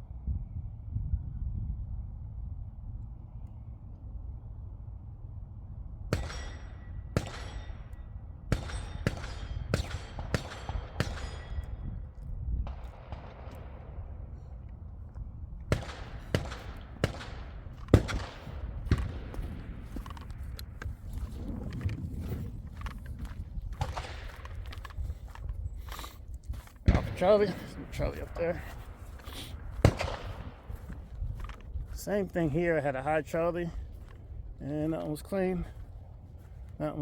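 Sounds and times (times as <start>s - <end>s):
gunshots: 6.1s - 7.9s, 8.5s - 11.8s, 12.6s - 14.2s, 15.7s - 20.5s, 23.8s - 24.8s, 26.8s - 31.6s.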